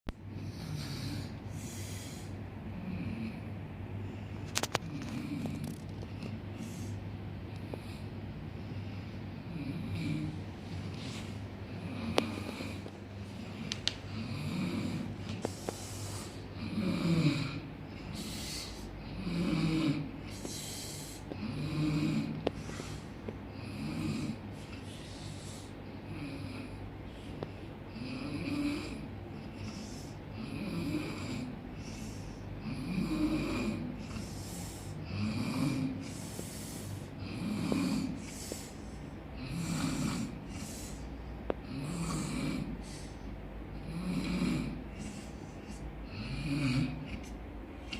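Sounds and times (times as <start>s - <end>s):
person snoring loudly: 14.1s - 15.2s, 16.6s - 20.7s, 21.4s - 22.5s, 23.5s - 24.4s, 27.9s - 29.7s, 30.3s - 34.3s, 34.9s - 36.5s, 37.2s - 38.4s, 39.4s - 41.0s, 41.6s - 43.1s, 43.8s - 45.2s, 46.1s - 47.2s.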